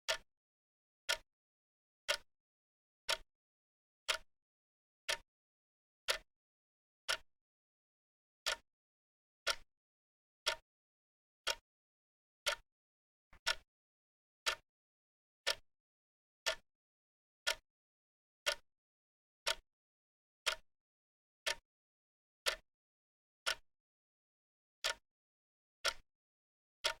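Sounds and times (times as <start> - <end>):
wrist watch ticking: 3.1 - 3.3, 10.4 - 10.6, 19.4 - 19.6, 20.4 - 20.6, 22.4 - 22.6.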